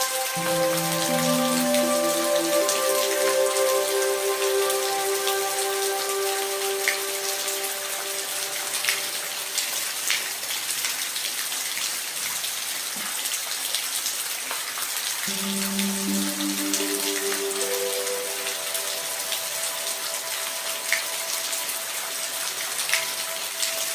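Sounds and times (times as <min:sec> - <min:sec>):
soft held music notes: 0:00.0 - 0:10.1, 0:15.3 - 0:23.9
steady rain: 0:00.0 - 0:23.9.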